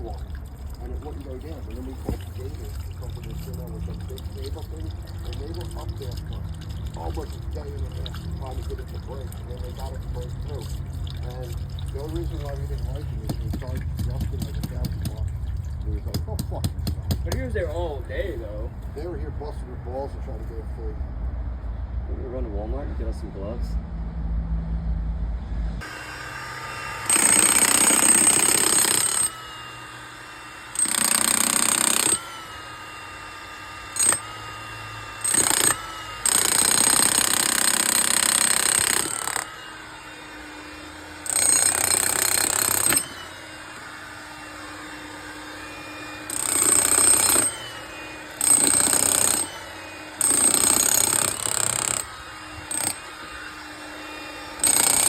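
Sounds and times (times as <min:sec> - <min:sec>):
power tool running in bursts: 0:25.8 - 0:55.0.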